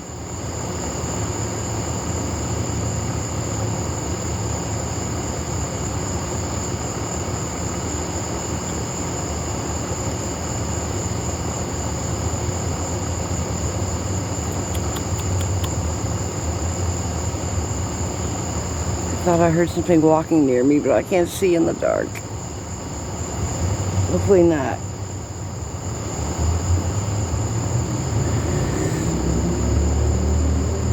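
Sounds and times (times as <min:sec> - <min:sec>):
insects droning: 0:00.0 - 0:30.9
quick clicks: 0:14.5 - 0:15.8.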